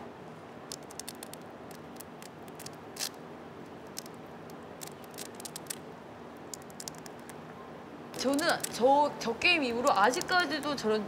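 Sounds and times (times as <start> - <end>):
velcro strap peeling open: 0.7 - 3.2, 3.8 - 5.8, 6.5 - 7.4.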